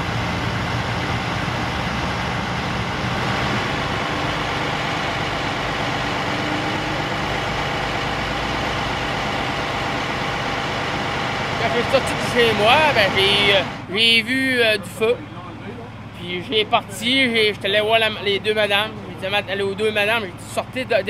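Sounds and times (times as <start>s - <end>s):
truck engine idling: 0.0s - 21.0s.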